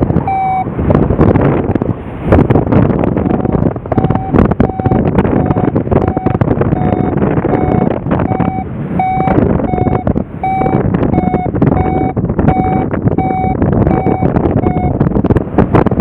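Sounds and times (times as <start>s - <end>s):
wind buffeting microphone: 0.0s - 16.0s
electronic beeper tones: 0.3s - 0.7s, 3.4s - 15.0s.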